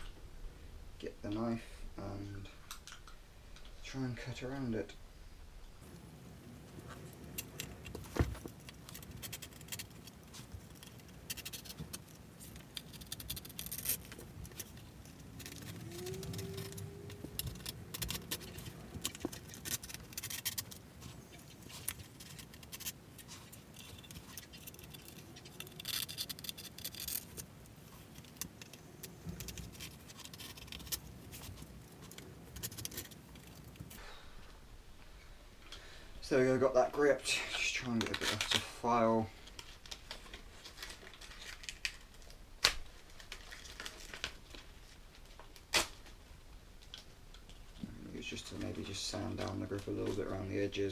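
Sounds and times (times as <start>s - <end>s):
knife rasping grip tape: 5.9s - 34.0s.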